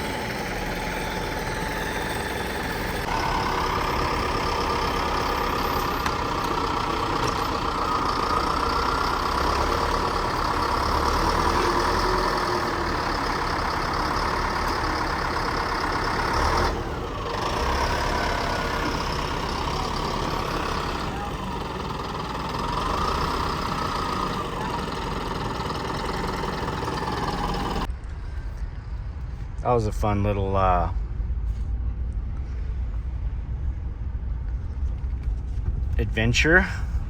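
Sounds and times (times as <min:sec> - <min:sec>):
engine running: 0:00.0 - 0:37.0.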